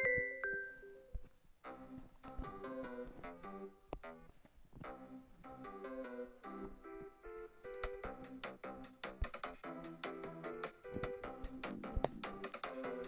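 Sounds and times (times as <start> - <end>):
electronic ringtone melody: 0.0 - 1.0
electronic drum beat: 7.7 - 13.0.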